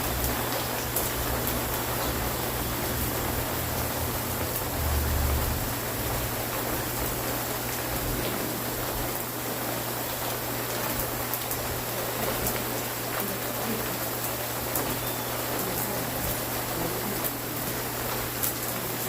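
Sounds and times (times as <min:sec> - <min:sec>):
steady rain: 0:00.0 - 0:19.0.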